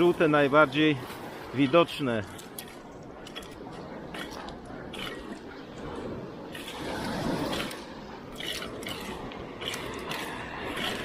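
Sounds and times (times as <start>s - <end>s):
water sloshing and dripping: 0.0s - 11.0s
small wet clicks: 2.2s - 5.6s, 6.5s - 11.0s.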